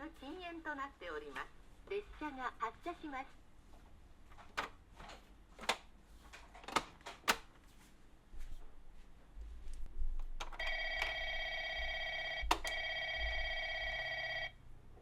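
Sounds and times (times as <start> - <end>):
sharp plastic clicks: 4.4 - 7.5
toy train electronic bell ringing: 10.6 - 14.5.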